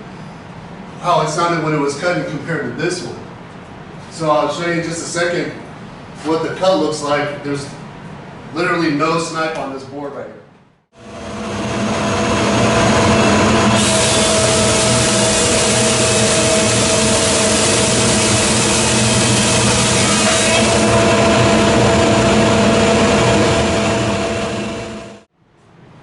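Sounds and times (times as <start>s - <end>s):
planer cutting wood hiss: 11.0s - 25.0s
planer running: 11.0s - 25.2s.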